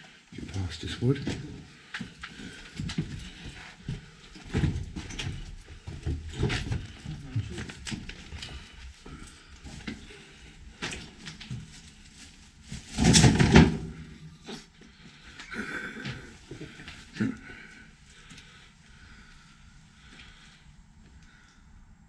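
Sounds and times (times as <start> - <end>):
loud thump and clatter: 12.9 - 14.1.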